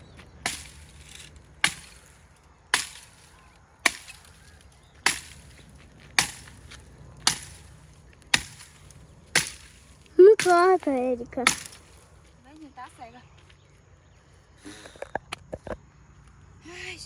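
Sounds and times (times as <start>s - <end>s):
cutting tool chopping wood: 0.2s - 12.0s.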